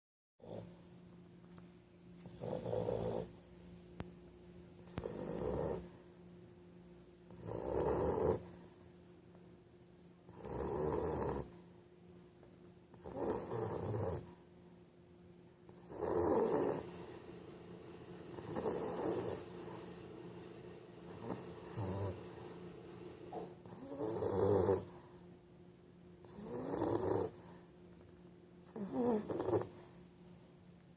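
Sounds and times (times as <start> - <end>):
dog snoring: 0.4 - 0.9, 2.2 - 3.5, 4.8 - 6.1, 7.3 - 8.8, 10.3 - 11.6, 12.9 - 14.4, 15.7 - 25.2, 26.2 - 27.7, 28.6 - 30.0.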